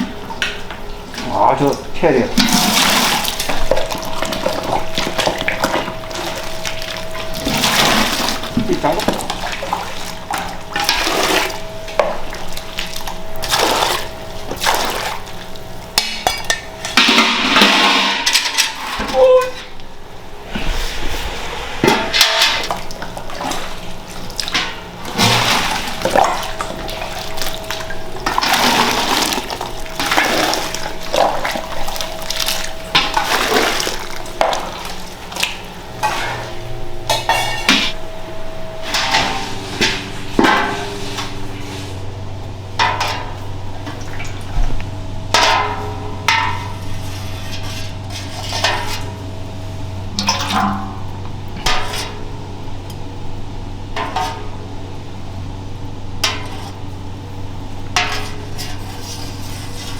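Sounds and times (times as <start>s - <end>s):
low machine hum: 0.0s - 59.9s
liquid pouring and splashing: 1.2s - 15.8s, 22.6s - 36.4s.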